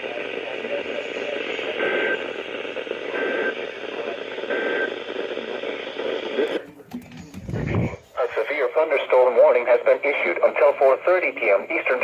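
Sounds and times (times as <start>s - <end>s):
radio static: 0.0s - 12.0s.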